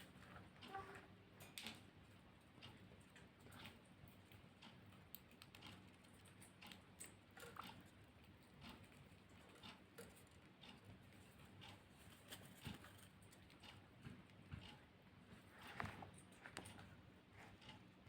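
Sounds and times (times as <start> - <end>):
finches hopping and pecking in cage: 0.1 - 17.0.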